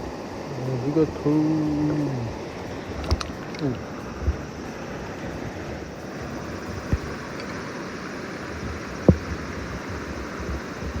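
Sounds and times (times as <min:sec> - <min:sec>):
stream water rushing: 0:00.0 - 0:11.0
dull knocks: 0:09.0 - 0:09.4.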